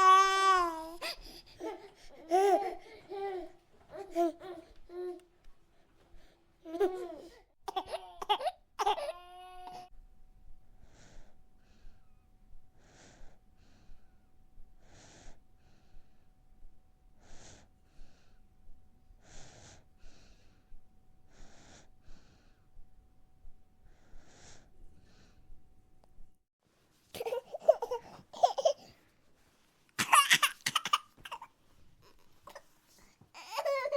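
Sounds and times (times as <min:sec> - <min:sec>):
baby breathing audibly: 0:00.0 - 0:04.8
baby crying: 0:00.0 - 0:05.2, 0:06.7 - 0:09.9, 0:33.4 - 0:33.9.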